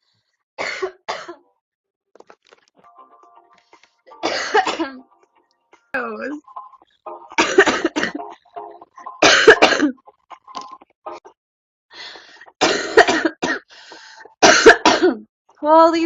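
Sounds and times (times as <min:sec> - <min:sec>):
girl coughing: 0:00.6 - 0:01.4, 0:04.2 - 0:05.0, 0:07.4 - 0:08.3, 0:09.2 - 0:10.0, 0:12.6 - 0:13.6, 0:14.4 - 0:15.2.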